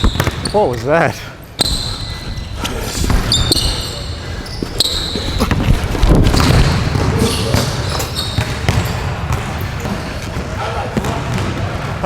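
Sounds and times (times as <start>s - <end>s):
basketball bouncing: 0.0s - 0.5s, 5.2s - 10.4s, 11.0s - 11.8s
sneakers squeaking: 0.0s - 0.9s, 1.5s - 12.0s.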